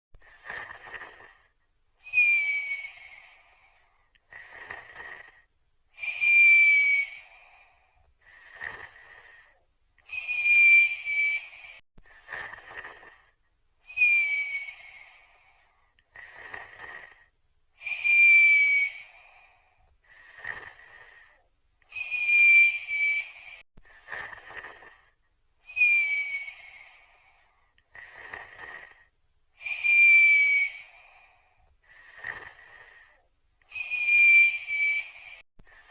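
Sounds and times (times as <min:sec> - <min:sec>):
rasping snore: 0:00.2 - 0:01.6, 0:02.4 - 0:05.5, 0:07.9 - 0:13.4, 0:14.0 - 0:19.2, 0:20.0 - 0:22.8, 0:23.8 - 0:25.2, 0:27.1 - 0:30.6, 0:31.6 - 0:34.6, 0:35.6 - 0:35.9
falling whistle: 0:02.1 - 0:03.3, 0:06.0 - 0:07.5, 0:10.1 - 0:11.8, 0:13.9 - 0:15.2, 0:17.9 - 0:19.2, 0:21.9 - 0:23.6, 0:25.7 - 0:27.0, 0:29.6 - 0:31.3, 0:33.7 - 0:35.4.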